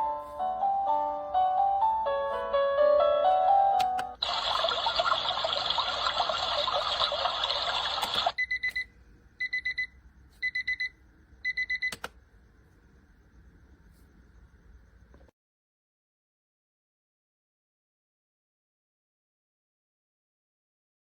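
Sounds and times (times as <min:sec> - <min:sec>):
music: 0:00.0 - 0:04.2
digital alarm clock beeping: 0:07.8 - 0:12.0
click: 0:11.8 - 0:12.2.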